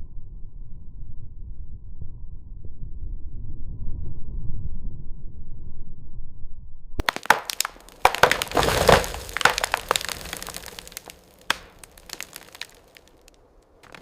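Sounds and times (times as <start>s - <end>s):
tree cracking and crashing down: 7.0s - 14.0s.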